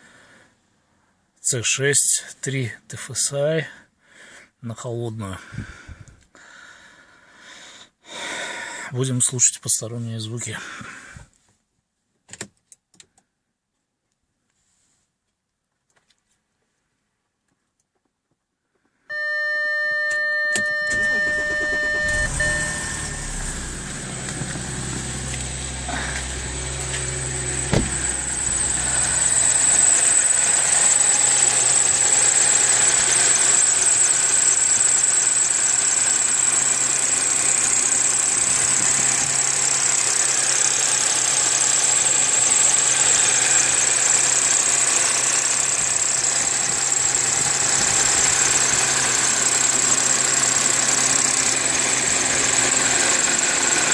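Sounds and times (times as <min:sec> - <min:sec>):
car engine starting and idling: 0:20.6 - 0:53.9
steady electronic tone: 0:20.8 - 0:40.8
high-pitched whine: 0:20.9 - 0:53.2.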